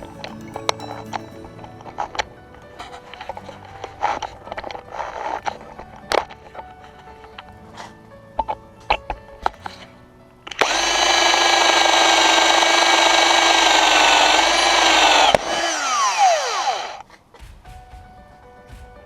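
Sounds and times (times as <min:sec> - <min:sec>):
cordless drill motor whining: 0:10.6 - 0:17.0.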